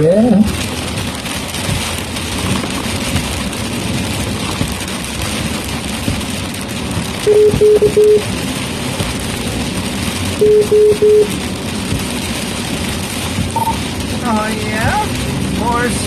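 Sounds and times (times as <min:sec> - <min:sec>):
road noise inside vehicle: 0:00.0 - 0:16.0
short electronic beeps: 0:07.3 - 0:08.2, 0:10.4 - 0:11.3, 0:13.6 - 0:13.8.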